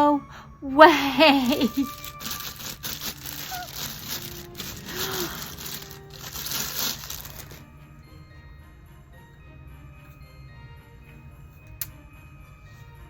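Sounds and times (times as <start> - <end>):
quiet background music: 0.0 - 13.0
packaging crinkling and rustling: 1.2 - 7.7.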